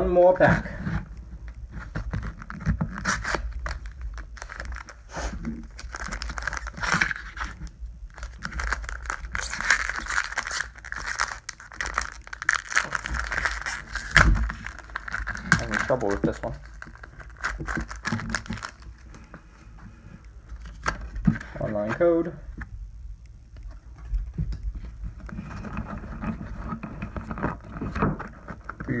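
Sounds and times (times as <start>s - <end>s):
foil wrapper tearing and crinkling: 1.8s - 19.3s.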